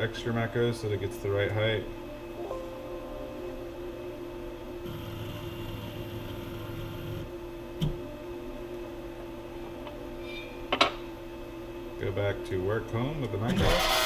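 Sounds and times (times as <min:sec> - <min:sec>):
stepper motors humming: 0:04.8 - 0:07.9.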